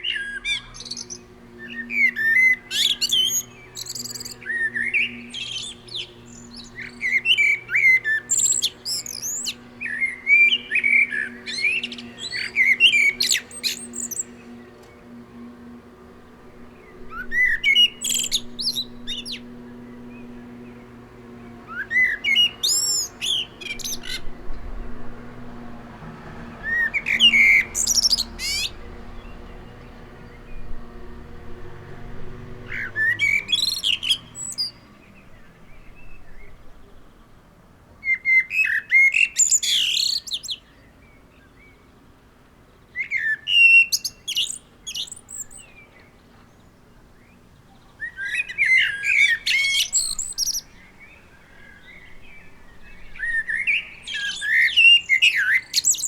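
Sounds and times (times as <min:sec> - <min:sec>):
blackbird singing: 0:00.0 - 0:42.0, 0:42.7 - 0:56.0
faint low hum: 0:00.2 - 0:38.0.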